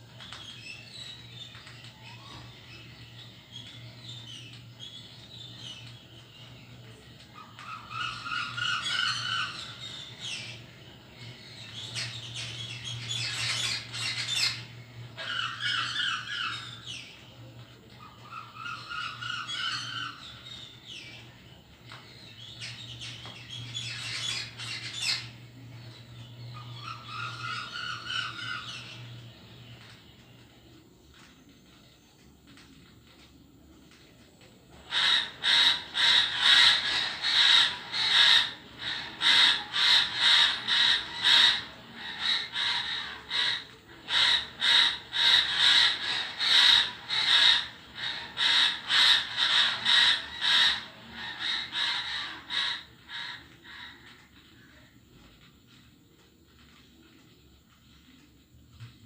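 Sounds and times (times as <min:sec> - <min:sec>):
bird calls: 0:00.0 - 0:59.0
steady low hum: 0:00.0 - 0:59.0
bird squawks: 0:07.3 - 0:10.7, 0:11.3 - 0:17.3, 0:18.0 - 0:21.2, 0:22.2 - 0:29.8, 0:34.8 - 0:54.9.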